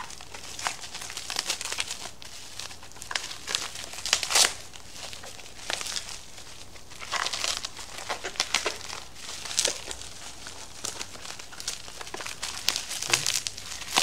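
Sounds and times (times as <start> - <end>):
packaging crinkling: 0.0 - 14.0.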